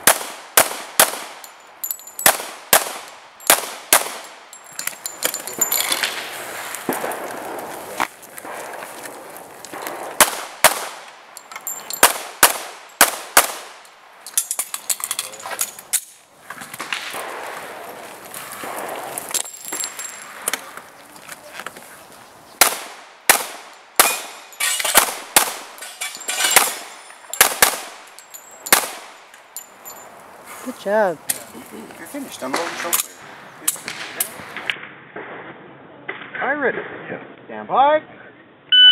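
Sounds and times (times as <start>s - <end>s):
handgun shots: 9.8s - 11.0s, 12.0s - 13.7s, 22.6s - 28.0s, 28.7s - 29.1s.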